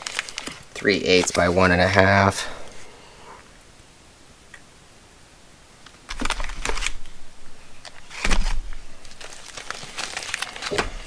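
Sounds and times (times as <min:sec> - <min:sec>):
plastic crinkling: 0:00.0 - 0:02.9, 0:05.8 - 0:11.0
pack thump: 0:08.1 - 0:11.0.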